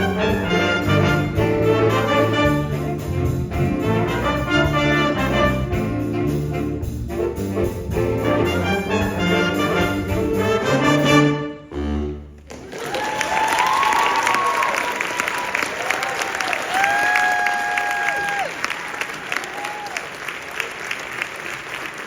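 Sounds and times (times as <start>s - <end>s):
jazz big band playing: 0.0s - 12.5s
audience applause: 12.5s - 22.0s.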